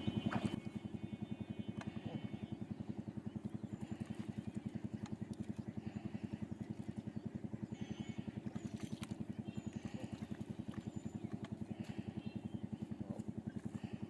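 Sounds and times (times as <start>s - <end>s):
small engine thumping: 0.0s - 2.6s.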